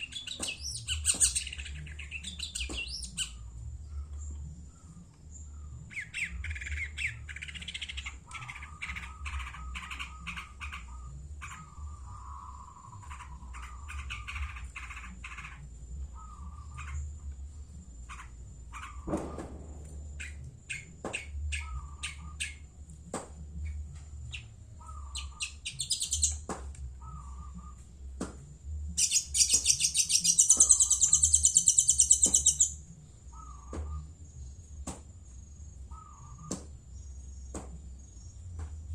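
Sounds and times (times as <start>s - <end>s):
harsh rapid bird chattering: 0.0s - 3.4s, 5.9s - 17.2s, 18.0s - 19.1s, 20.2s - 22.6s, 23.6s - 26.4s, 29.0s - 34.0s
bird chirping: 0.0s - 22.9s, 23.5s - 28.0s, 28.9s - 38.9s.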